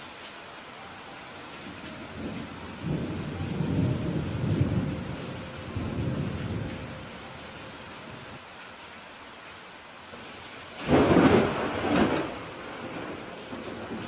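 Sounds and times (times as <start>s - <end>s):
steady rain hissing: 0.0s - 14.0s
low roll of thunder: 2.0s - 8.4s, 10.8s - 14.0s.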